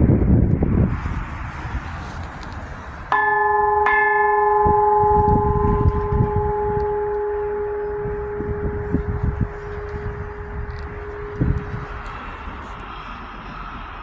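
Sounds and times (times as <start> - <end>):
church bell ringing: 3.1 - 12.4.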